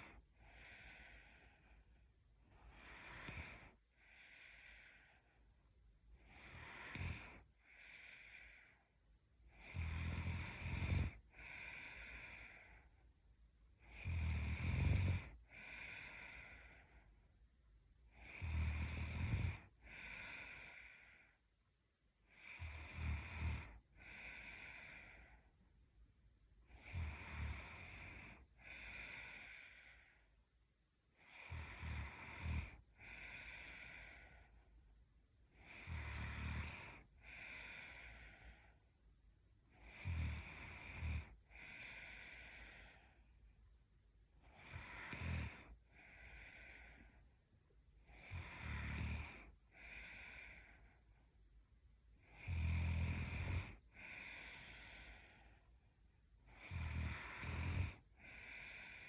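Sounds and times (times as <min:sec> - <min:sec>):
woman snoring with low rattle: 0:02.4 - 0:05.4, 0:06.1 - 0:08.8, 0:09.4 - 0:12.9, 0:13.8 - 0:17.0, 0:18.0 - 0:21.4, 0:22.2 - 0:25.5, 0:26.6 - 0:30.3, 0:31.1 - 0:34.6, 0:35.5 - 0:38.8, 0:39.6 - 0:43.2, 0:44.4 - 0:47.2, 0:48.0 - 0:51.0, 0:52.1 - 0:55.7, 0:56.4 - 0:59.0.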